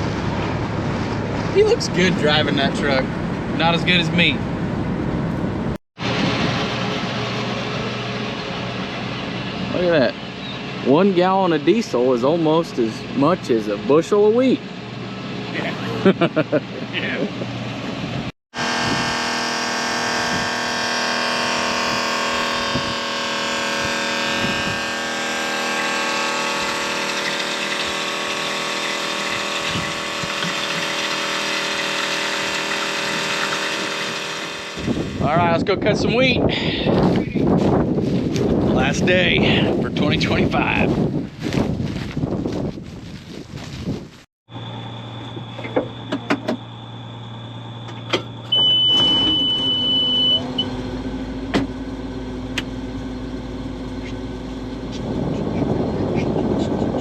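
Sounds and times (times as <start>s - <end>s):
fuel pump running: 18.6s - 35.3s
loud electronic beep: 44.5s - 50.8s
low machine hum: 44.5s - 57.0s.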